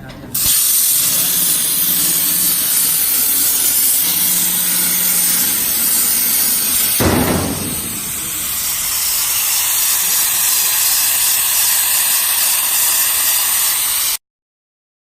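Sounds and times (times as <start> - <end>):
plasma cutter hissing: 0.3 - 14.2
low rush: 0.4 - 11.3.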